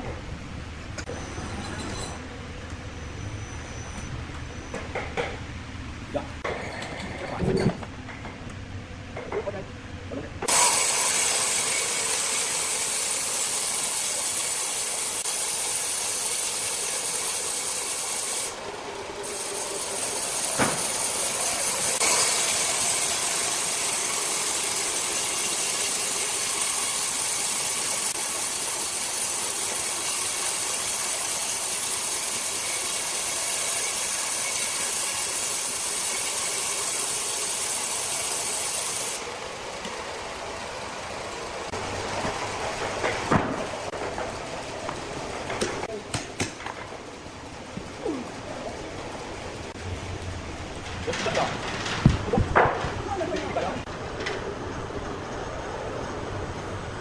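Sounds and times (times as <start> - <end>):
circular saw cutting wood: 10.4 - 50.2.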